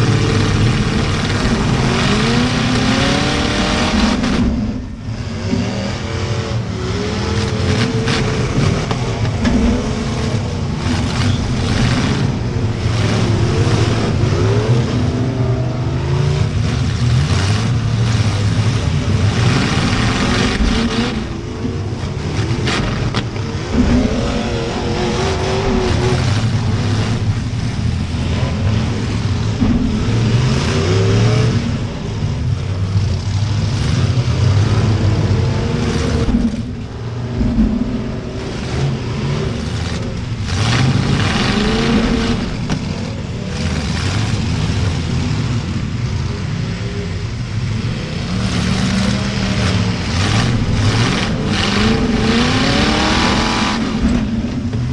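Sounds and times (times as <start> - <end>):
car engines revving hard: 0.0 - 54.9
cars colliding with sharp bangs: 35.8 - 46.1.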